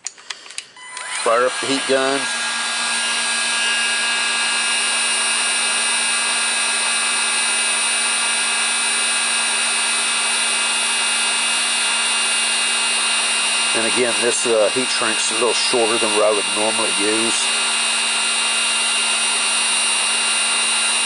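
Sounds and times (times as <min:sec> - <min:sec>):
heat gun fan hum: 0:00.1 - 0:21.0.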